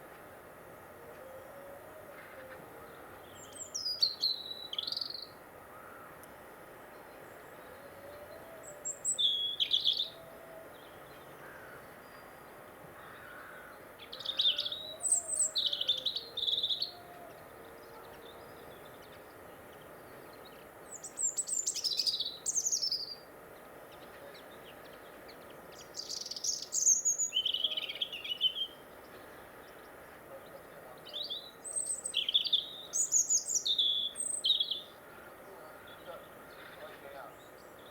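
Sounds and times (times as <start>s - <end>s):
songbird singing high phrases: 3.3s - 5.4s, 7.3s - 11.3s, 14.0s - 23.3s, 23.9s - 29.1s, 29.7s - 37.9s.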